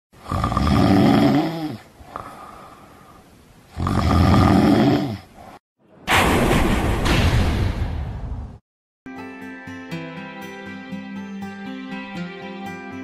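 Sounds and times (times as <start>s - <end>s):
person snoring: 0.2s - 5.4s
soft breath: 2.0s - 3.4s.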